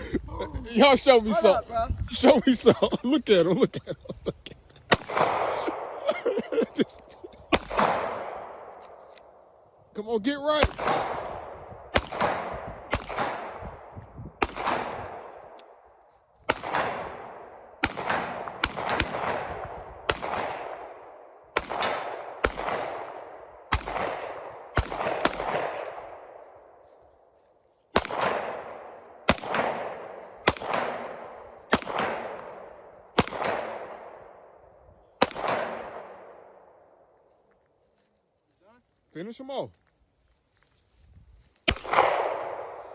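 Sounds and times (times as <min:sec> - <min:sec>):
gunshots with echo: 0:04.9 - 0:06.3, 0:07.4 - 0:08.8, 0:10.5 - 0:15.6, 0:16.4 - 0:26.6, 0:27.9 - 0:34.6, 0:35.2 - 0:36.8, 0:41.7 - 0:42.9.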